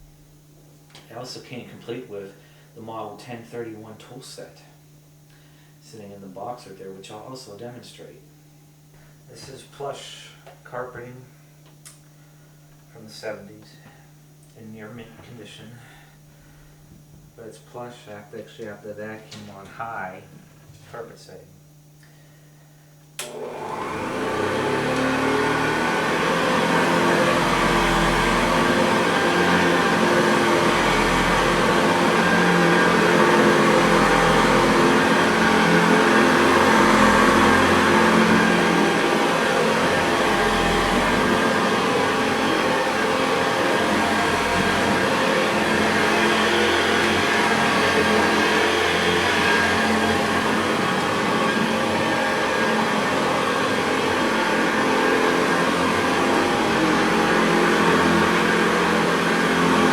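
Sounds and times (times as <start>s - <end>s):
upright vacuum cleaner running: 23.2s - 59.9s.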